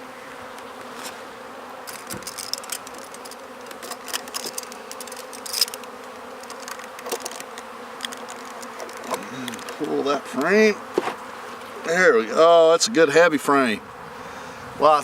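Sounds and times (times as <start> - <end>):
bees buzzing: 0.0 - 15.0
wooden frames clicking and scraping: 1.8 - 10.0.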